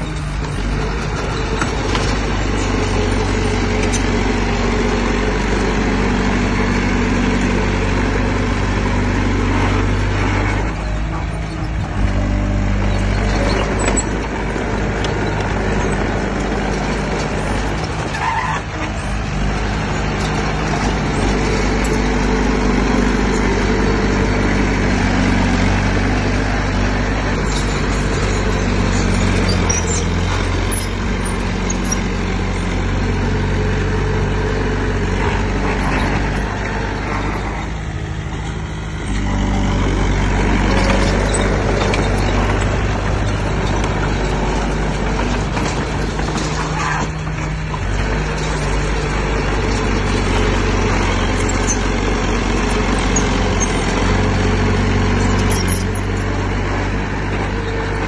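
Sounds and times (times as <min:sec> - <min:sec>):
heavy diesel engine running: 0:00.0 - 0:58.0.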